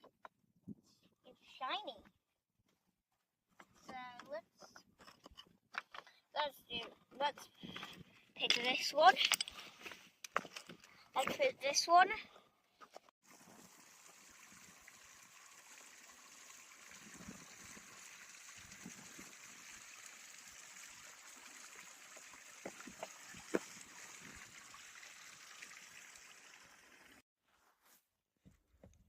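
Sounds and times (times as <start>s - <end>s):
water trickling: 13.3s - 27.2s.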